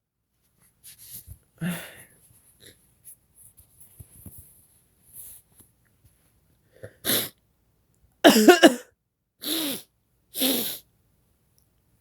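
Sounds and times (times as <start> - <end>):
person wheezy breathing: 1.6 - 2.1, 9.4 - 10.8
person sniffing: 6.9 - 7.4, 9.4 - 10.9
person sneezing: 7.0 - 7.4, 8.3 - 8.8, 9.4 - 10.8.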